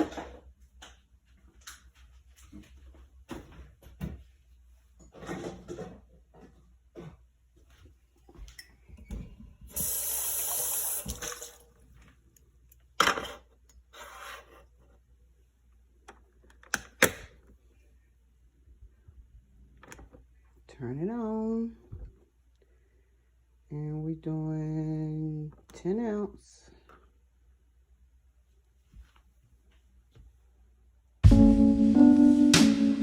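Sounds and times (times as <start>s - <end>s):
water running from a tap: 9.7s - 11.8s.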